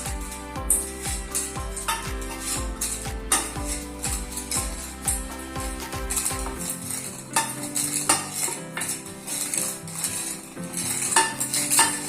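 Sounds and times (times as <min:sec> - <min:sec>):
background music: 0:00.0 - 0:12.0
spoon stirring and clinking in pot: 0:06.5 - 0:12.0.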